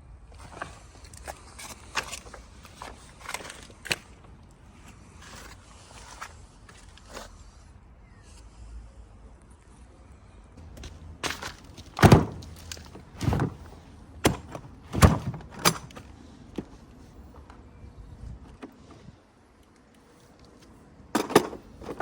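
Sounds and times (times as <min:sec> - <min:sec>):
bricks knocking and thudding: 0:10.7 - 0:16.8.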